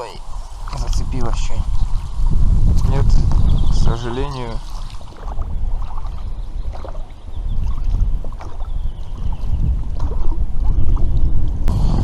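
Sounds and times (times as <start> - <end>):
steady low rumble: 0.0 - 8.4, 9.2 - 12.0
small splashes and knocks on water: 4.6 - 11.1.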